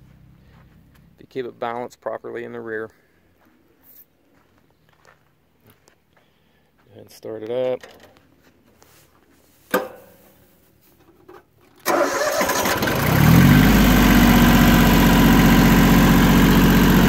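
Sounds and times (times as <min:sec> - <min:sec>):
diesel engine starting and idling: 0:11.8 - 0:17.0.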